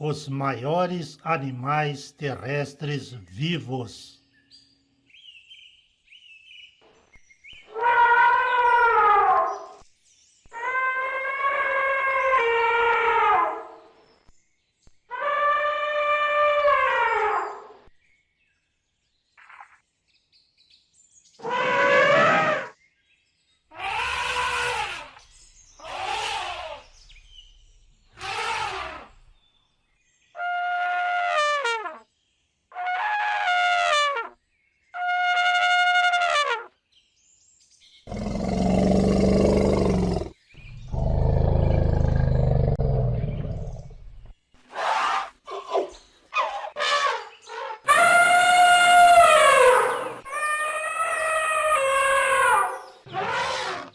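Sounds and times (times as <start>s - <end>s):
elephant trumpeting: 21.4s - 22.7s, 23.8s - 25.2s, 25.8s - 26.9s, 28.2s - 29.2s, 38.1s - 44.0s, 46.4s - 53.9s.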